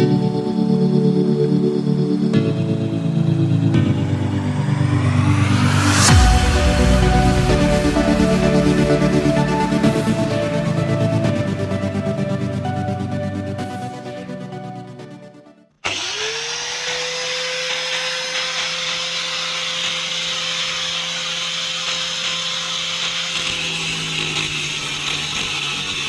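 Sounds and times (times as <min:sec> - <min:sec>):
loud hiss: 0:04.0 - 0:11.3
angle grinder motor whining: 0:15.8 - 0:26.0.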